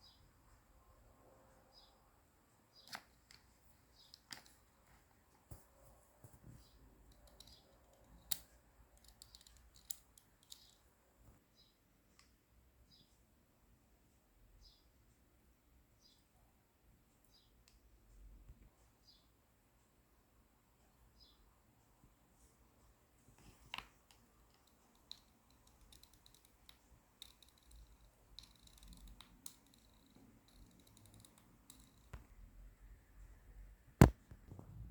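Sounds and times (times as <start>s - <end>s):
small hard parts clicking: 7.1s - 10.8s, 23.7s - 32.2s.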